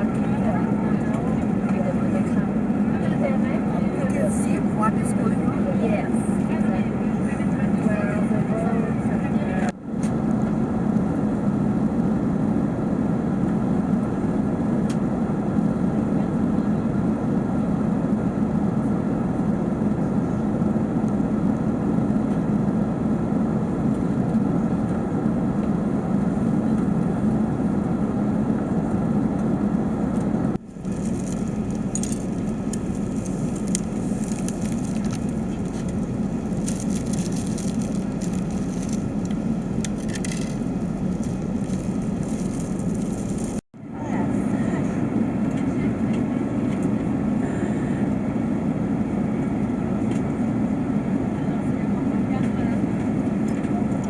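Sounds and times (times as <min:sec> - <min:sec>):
airplane cabin engine roar: 0:00.0 - 0:54.0
scratchy rustling and crackling: 0:30.7 - 0:43.6.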